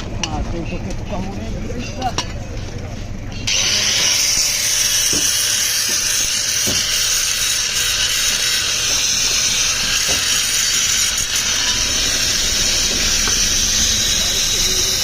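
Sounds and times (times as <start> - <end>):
arc welding sizzling hiss: 3.5 - 15.0.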